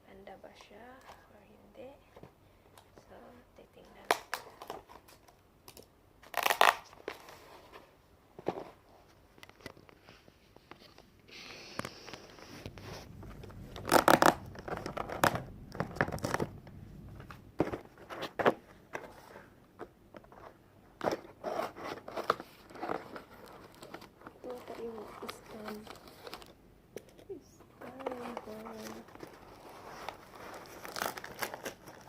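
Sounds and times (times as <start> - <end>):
packaging tearing and crinkling: 4.0 - 7.5, 13.2 - 16.6, 21.0 - 26.6, 27.9 - 32.0.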